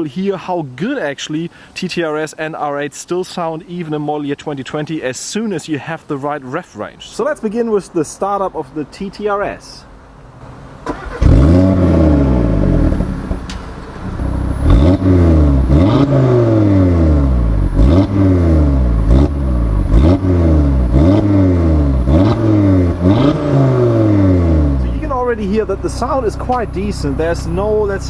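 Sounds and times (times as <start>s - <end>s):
car engine starting: 9.9s - 28.0s
car engine revving: 10.3s - 28.0s.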